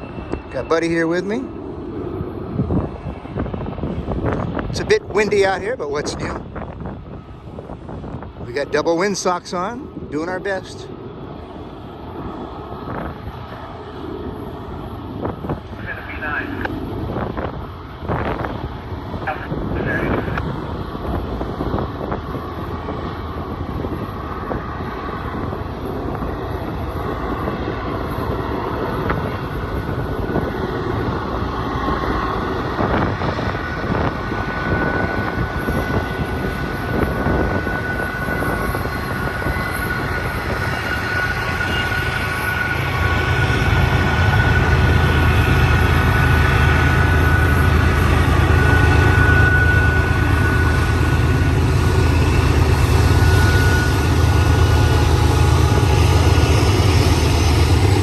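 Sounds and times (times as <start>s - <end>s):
freight train rolling past: 0.0s - 58.0s
wind on microphone: 0.0s - 58.0s
steady high tone: 34.6s - 58.0s.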